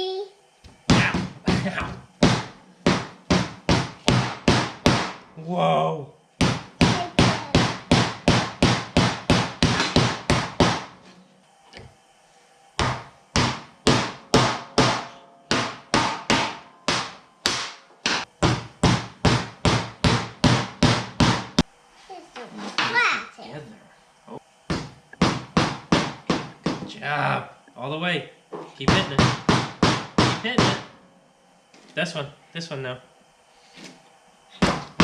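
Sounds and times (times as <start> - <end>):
hammer driving nails: 6.4 - 10.9.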